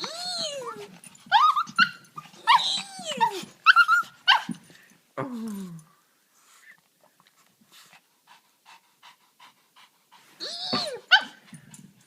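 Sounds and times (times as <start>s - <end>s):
dog whining and yelping: 0.0s - 4.6s, 10.4s - 11.6s.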